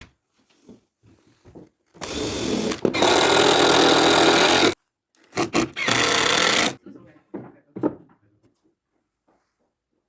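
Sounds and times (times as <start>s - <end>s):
power drill running: 2.0s - 6.8s.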